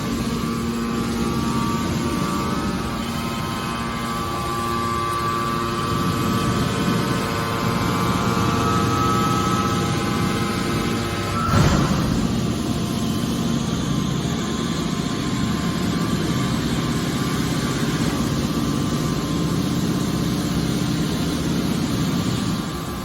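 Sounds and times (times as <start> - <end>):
baler pump humming and whining: 0.0 - 23.0
sharp knock: 11.4 - 12.6.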